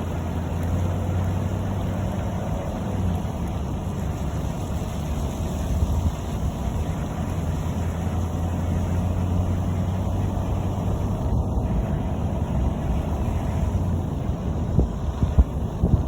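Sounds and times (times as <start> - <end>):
river rushing: 0.0 - 16.0
wind bumps on microphone: 10.1 - 16.0.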